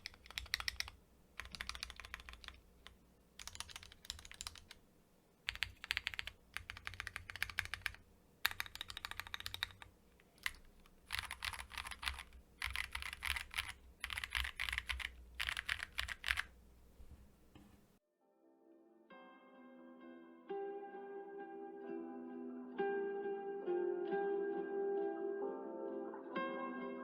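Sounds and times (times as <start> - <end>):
mechanical keyboard typing: 0.0 - 4.8, 5.5 - 16.5.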